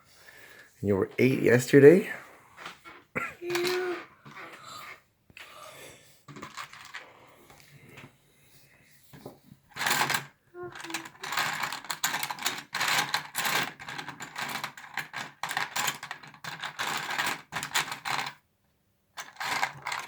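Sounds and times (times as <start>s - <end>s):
plastic pieces clicking and rattling: 3.5s - 4.5s, 6.3s - 7.1s, 9.7s - 18.4s, 19.2s - 20.0s.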